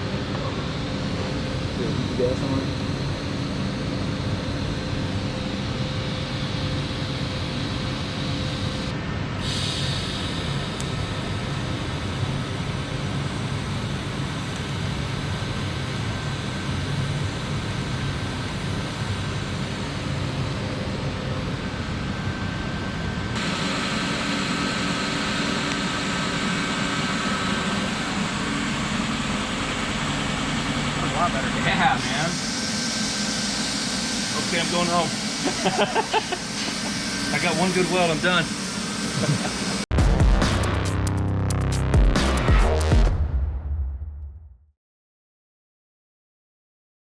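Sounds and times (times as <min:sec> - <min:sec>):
welding arc buzzing and hissing: 0:23.4 - 0:42.9.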